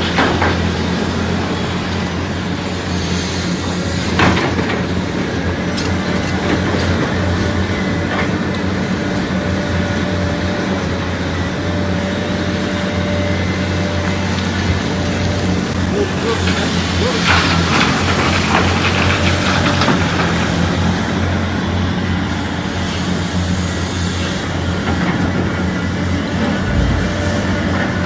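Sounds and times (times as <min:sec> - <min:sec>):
excavator diesel engine running: 0:00.0 - 0:28.0.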